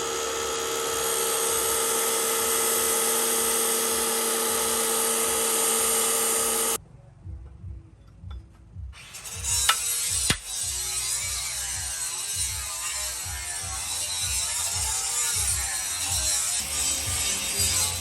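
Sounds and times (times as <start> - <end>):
power tool grinding steel: 0.0 - 6.8, 9.0 - 18.0
background music: 6.8 - 18.0.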